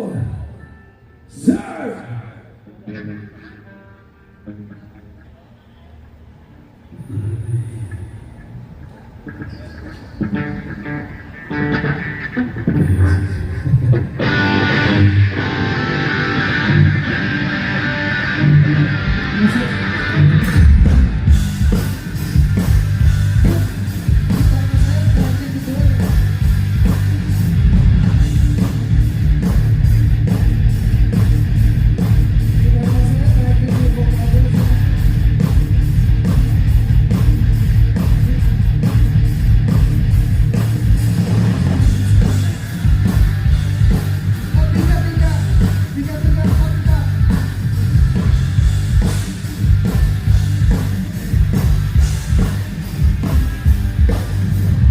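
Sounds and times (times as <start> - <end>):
distorted electric guitar: 0.0 - 54.9
bass guitar: 1.3 - 5.4, 6.9 - 54.9
fast drum-kit hits: 20.4 - 54.9.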